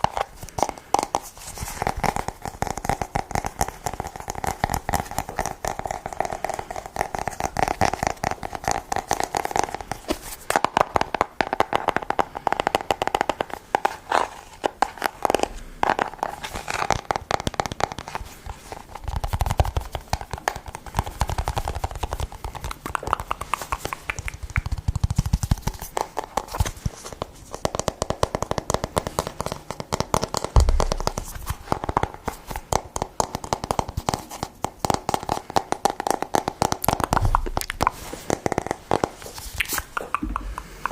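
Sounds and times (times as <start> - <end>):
fast tapping clicks: 19.0 - 40.9
heavy low thumps: 30.6 - 31.5.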